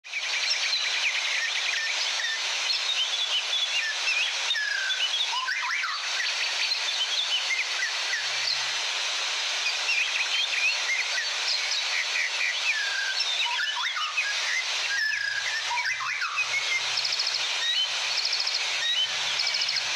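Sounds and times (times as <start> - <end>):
birds chirping and whistling: 9.7 - 19.9.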